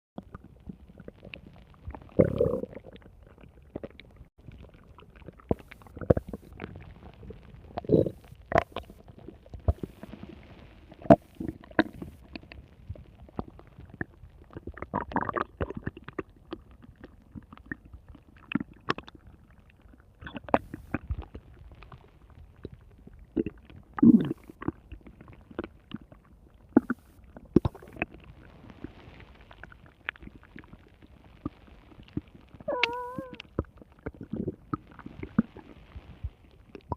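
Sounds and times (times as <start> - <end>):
stomach growling: 0.2 - 36.9.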